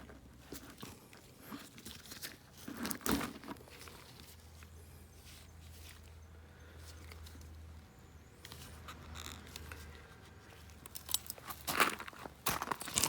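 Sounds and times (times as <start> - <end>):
rustling crinkling handling: 0.0 - 6.2.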